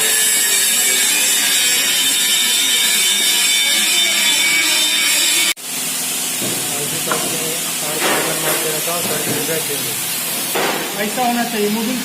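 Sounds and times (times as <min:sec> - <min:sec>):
welding arc hissing: 0:00.0 - 0:12.0.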